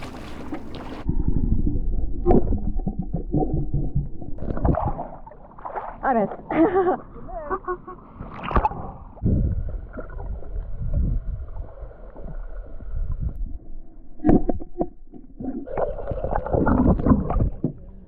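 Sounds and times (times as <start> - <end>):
water sloshing around boat: 0.0 - 1.1.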